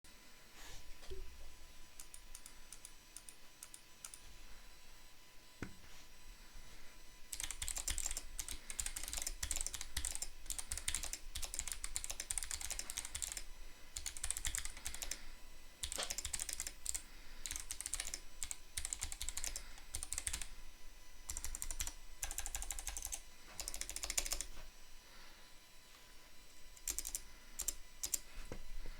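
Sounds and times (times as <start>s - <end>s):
mechanical keyboard typing clicks: 7.3s - 13.4s, 14.0s - 15.2s, 15.8s - 20.5s, 21.3s - 24.5s, 26.8s - 28.2s.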